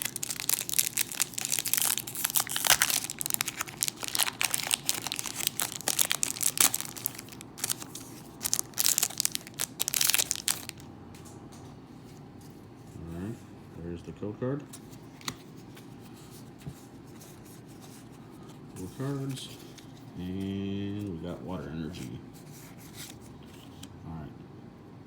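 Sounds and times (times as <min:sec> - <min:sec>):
foil wrapper crinkling and tearing: 0:00.0 - 0:10.8.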